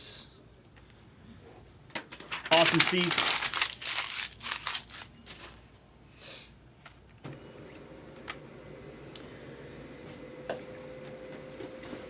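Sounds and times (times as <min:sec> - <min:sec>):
printer humming: 0:07.3 - 0:12.0.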